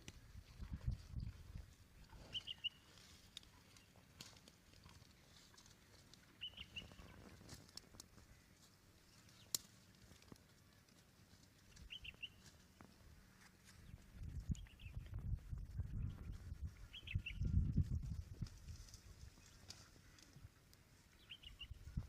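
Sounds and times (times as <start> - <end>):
cows grazing rustling and crunching: 0.0 - 22.0
small bird chirping: 2.3 - 2.9, 6.4 - 7.2, 11.7 - 12.4, 13.8 - 17.9, 21.2 - 21.8.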